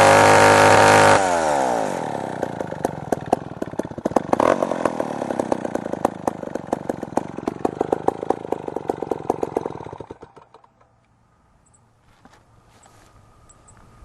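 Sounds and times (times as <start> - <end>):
chainsaw engine running unevenly: 0.0 - 11.0.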